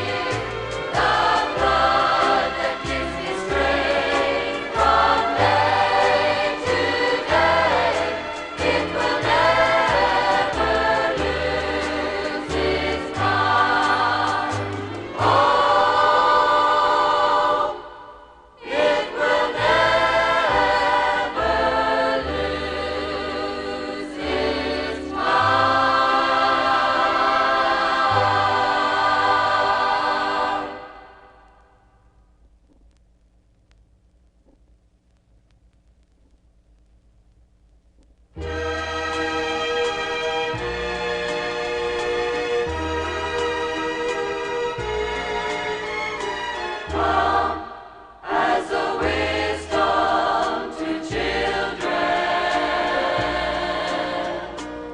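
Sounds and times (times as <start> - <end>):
choir singing gospel: 0.0 - 31.6, 38.4 - 54.9
instrumental accompaniment: 38.4 - 47.7.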